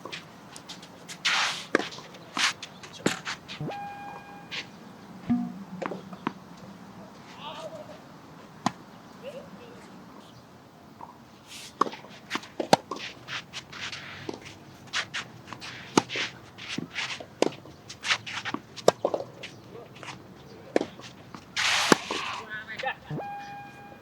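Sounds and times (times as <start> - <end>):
racket striking tennis ball: 5.2 - 7.1, 21.6 - 22.2
tennis ball bouncing: 5.2 - 7.1.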